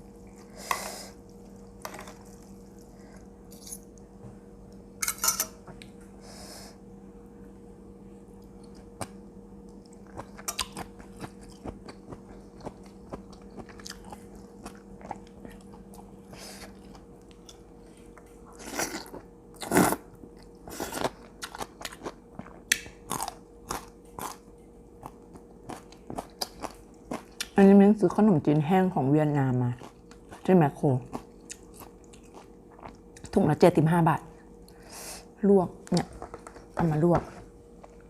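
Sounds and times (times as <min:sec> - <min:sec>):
person chewing crunchy food: 0:08.4 - 0:27.6, 0:29.7 - 0:33.3.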